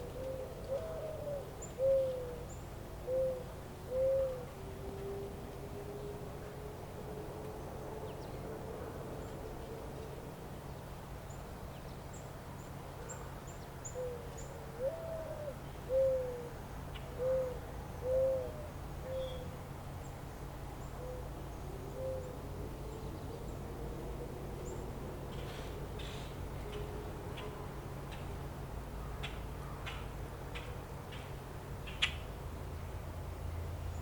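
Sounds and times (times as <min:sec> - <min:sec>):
bird hooting: 0:00.0 - 0:04.6, 0:13.8 - 0:19.6, 0:21.0 - 0:21.3, 0:21.9 - 0:22.4
low background noise: 0:00.0 - 0:34.0.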